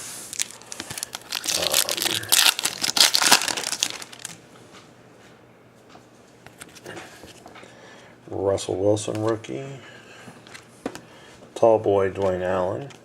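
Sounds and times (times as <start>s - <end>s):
foil wrapper crinkling and tearing: 0.3s - 4.4s.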